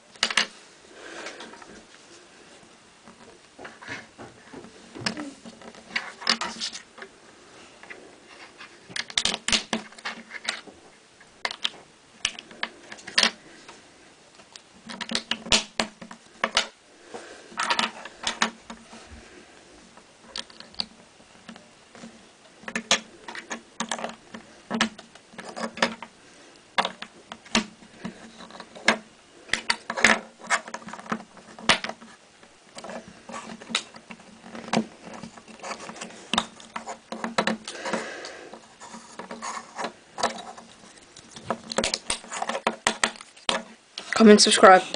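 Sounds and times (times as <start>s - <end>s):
plastic bricks clicking: 9.0s - 10.6s, 11.4s - 13.4s, 14.4s - 16.8s, 22.6s - 26.1s, 40.2s - 44.1s.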